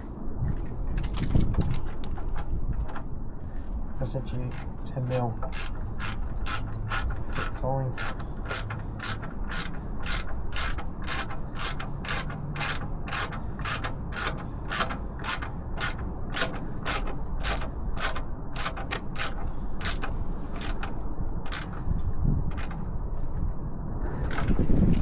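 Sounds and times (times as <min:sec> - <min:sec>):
ratchet wrench clicking: 0:04.5 - 0:21.9, 0:22.5 - 0:22.8, 0:24.3 - 0:24.6.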